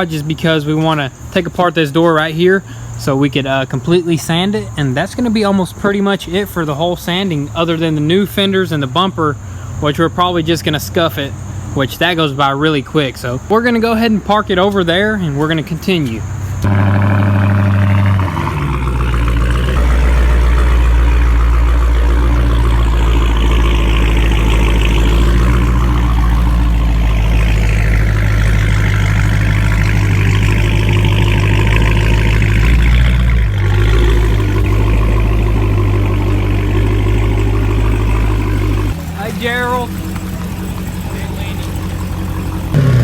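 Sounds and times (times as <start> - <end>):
car engine at low revs: 14.9 - 43.0.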